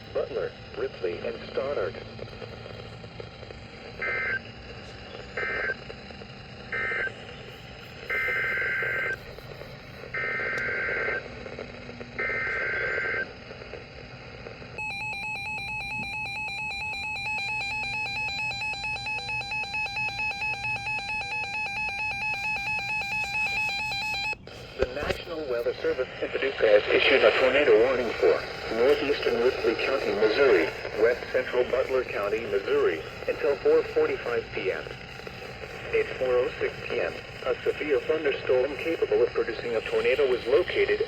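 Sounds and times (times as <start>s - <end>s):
radio hiss: 0.0s - 41.0s
digital data squawks: 14.8s - 24.4s, 25.0s - 41.0s.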